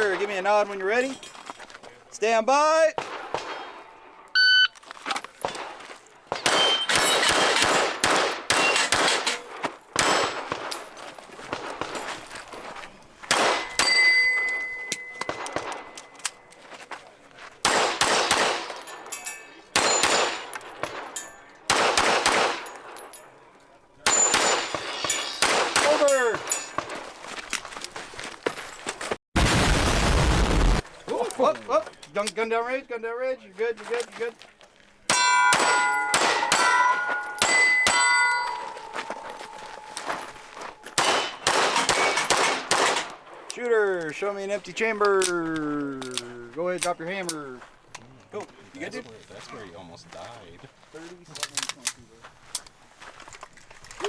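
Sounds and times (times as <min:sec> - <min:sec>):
pistol shots: 0:03.0 - 0:04.3, 0:05.4 - 0:12.0, 0:13.3 - 0:16.5, 0:17.6 - 0:23.2, 0:24.1 - 0:27.0, 0:35.1 - 0:40.0, 0:40.9 - 0:43.5
steel target ringing: 0:13.6 - 0:16.2, 0:24.1 - 0:26.8, 0:35.1 - 0:42.3.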